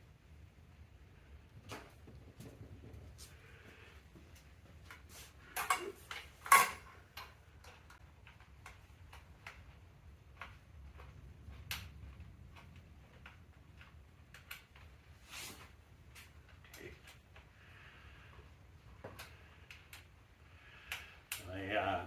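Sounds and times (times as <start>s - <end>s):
hand tools and screws clattering: 5.0s - 7.9s.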